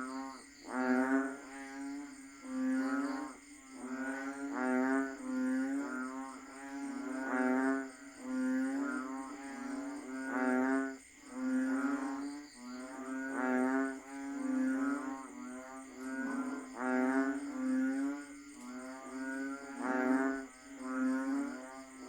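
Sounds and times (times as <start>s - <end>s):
chorus of frogs calling: 0.0s - 22.0s.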